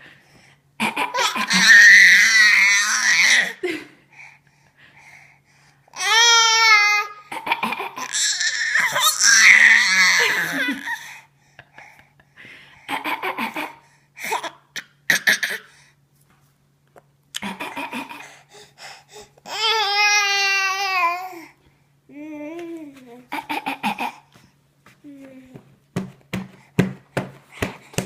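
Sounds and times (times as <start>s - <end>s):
baby fake coughing: 0.8s - 1.7s, 12.9s - 15.7s, 23.4s - 24.3s
baby laughing: 0.8s - 2.0s, 23.3s - 24.3s
baby high-pitched squeal: 1.3s - 3.6s.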